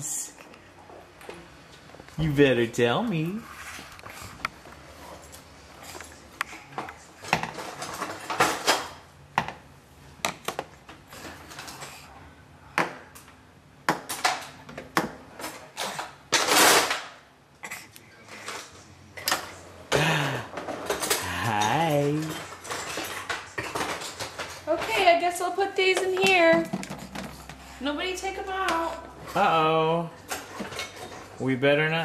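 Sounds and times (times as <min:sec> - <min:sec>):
dishes and cutlery clinking: 0:18.4 - 0:25.1, 0:30.2 - 0:31.4.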